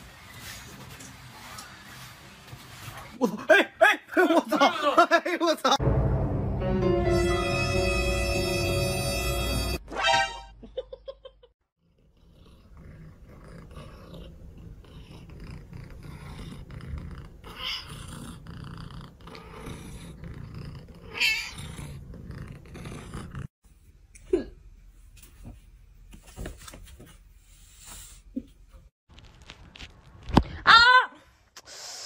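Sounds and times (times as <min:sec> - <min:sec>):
cat purring: 0:11.9 - 0:23.5.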